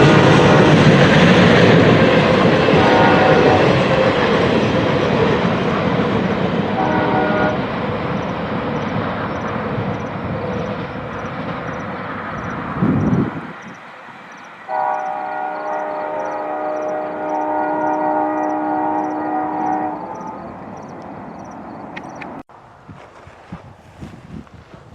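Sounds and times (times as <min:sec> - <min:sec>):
train horn: 0:00.0 - 0:04.8, 0:06.7 - 0:07.8, 0:14.6 - 0:20.7
freight train rumbling: 0:00.0 - 0:24.9.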